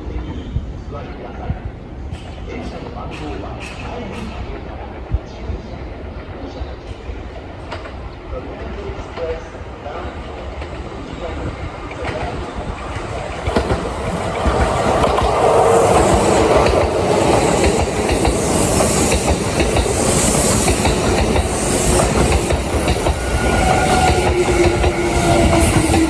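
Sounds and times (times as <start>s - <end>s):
train wheels running: 10.0s - 26.0s.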